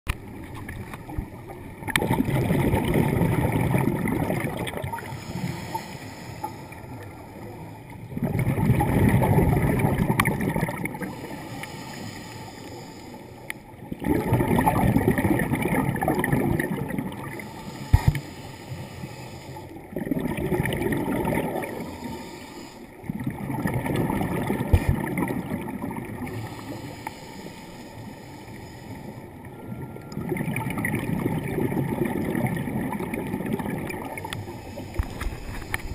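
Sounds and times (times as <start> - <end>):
air bubbling underwater: 1.9 - 5.1, 8.1 - 11.0, 14.0 - 17.3, 19.9 - 21.8, 23.1 - 26.2.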